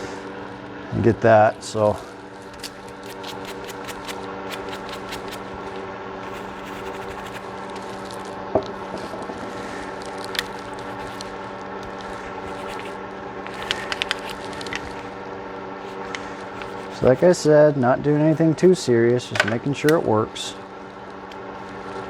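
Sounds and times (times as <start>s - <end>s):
steady background hum: 0.0s - 22.0s
gun clicks and scrapes: 6.3s - 15.1s.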